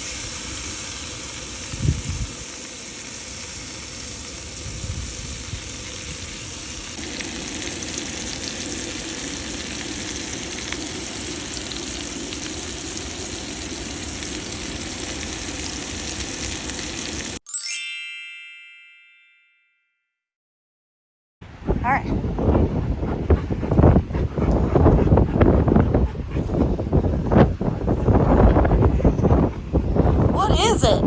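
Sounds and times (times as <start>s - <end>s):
seafood sizzling in a pan: 0.0s - 17.4s.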